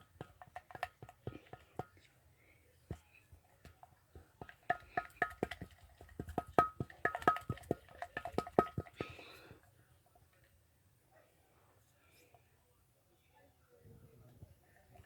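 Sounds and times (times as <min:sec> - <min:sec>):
utensil clinking against bowl: 0:02.9 - 0:09.5.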